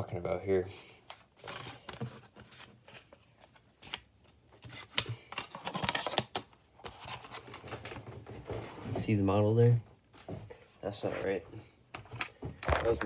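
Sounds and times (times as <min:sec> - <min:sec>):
packaging clicks taps and rustles: 0:01.4 - 0:08.0.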